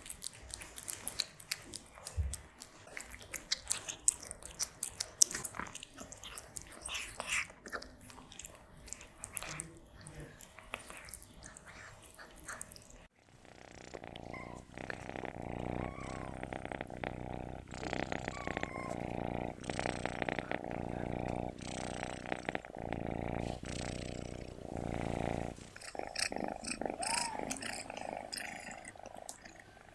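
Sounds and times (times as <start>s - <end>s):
cat chewing clicks: 0.0s - 12.8s
cat purring: 0.0s - 29.9s.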